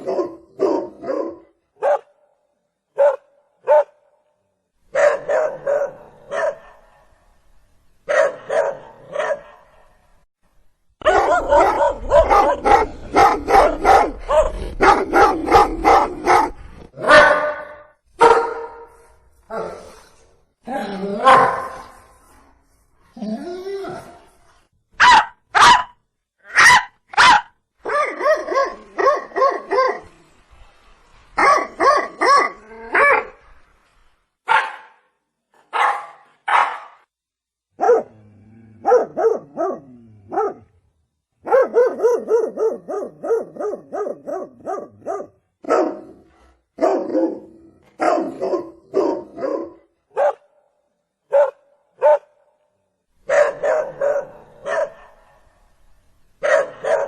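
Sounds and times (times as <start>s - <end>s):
dog barking: 0.0s - 2.2s, 3.0s - 4.1s, 4.9s - 7.1s, 8.1s - 9.9s, 11.0s - 19.0s, 21.2s - 21.8s, 25.0s - 30.1s, 31.4s - 33.3s, 34.5s - 35.1s, 35.7s - 37.0s, 37.8s - 38.2s, 38.8s - 40.7s, 41.4s - 50.6s, 51.3s - 52.4s, 53.2s - 55.3s, 56.4s - 57.0s.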